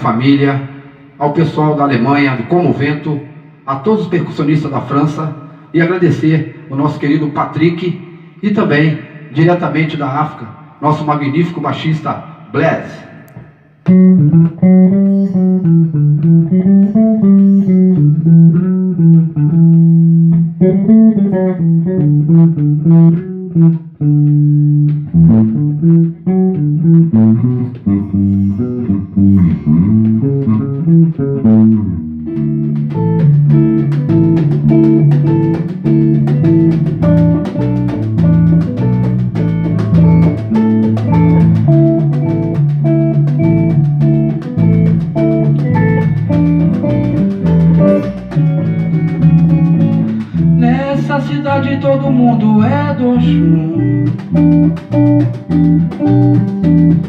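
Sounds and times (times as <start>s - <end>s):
bass guitar: 0.0s - 57.0s
plucked guitar melody: 13.8s - 57.0s
drums and percussion: 27.3s - 57.0s.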